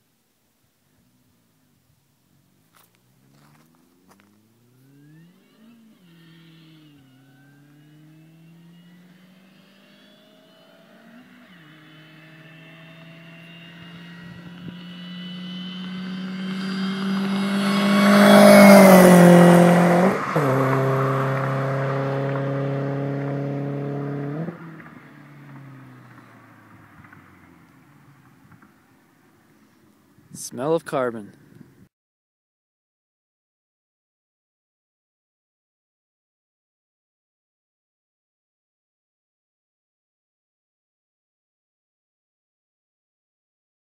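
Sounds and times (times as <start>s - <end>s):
car engine accelerating: 2.3s - 29.5s
engine revving: 3.1s - 27.6s.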